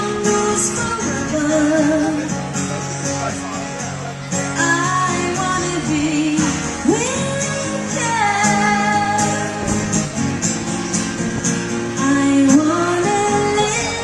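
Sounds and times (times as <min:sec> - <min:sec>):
woman singing: 0:00.0 - 0:02.3, 0:04.6 - 0:10.0, 0:12.0 - 0:14.0
guitar chords: 0:00.0 - 0:14.0.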